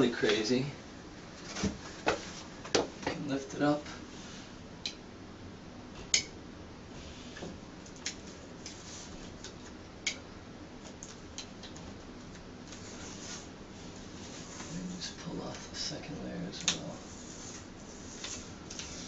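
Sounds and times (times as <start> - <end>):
wallcovering peeling and rustling: 10.7 - 19.0.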